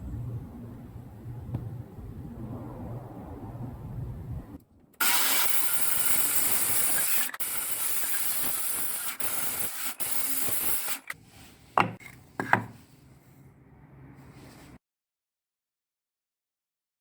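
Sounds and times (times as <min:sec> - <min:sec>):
spray hissing: 0:05.0 - 0:11.2.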